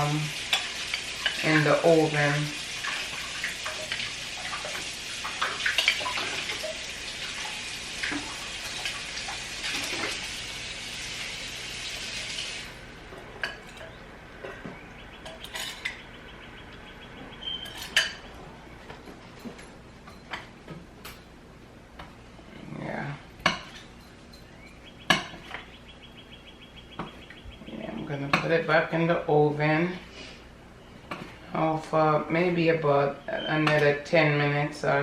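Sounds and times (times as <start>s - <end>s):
chicken wings sizzling in pan: 0.0s - 12.9s.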